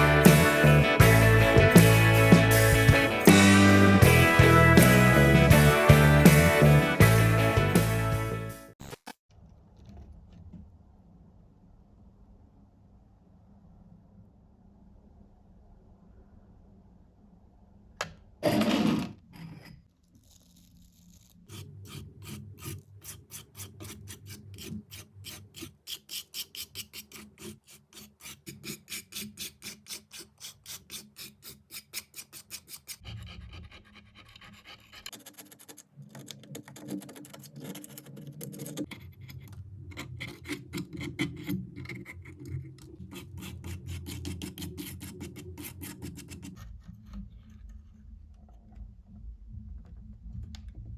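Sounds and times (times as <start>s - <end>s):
scratchy rubbing strokes: 20.2s - 39.1s.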